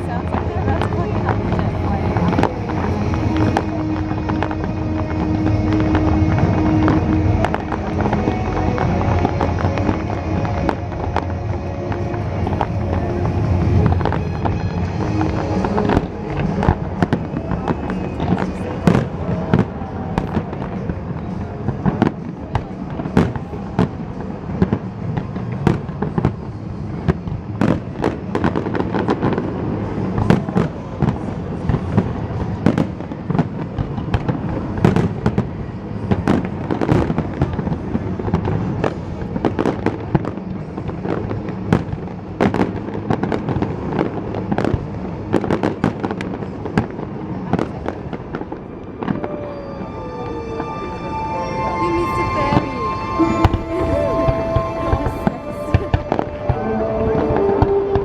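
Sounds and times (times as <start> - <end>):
low rumble: 0.0 - 22.0.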